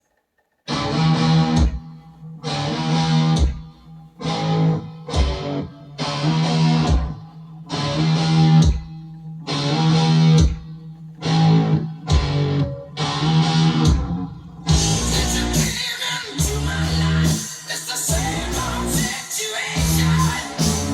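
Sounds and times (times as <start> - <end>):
strummed guitar chords: 0.7 - 20.9
bass notes: 11.4 - 15.7, 16.4 - 17.4, 18.1 - 19.0, 19.8 - 20.9.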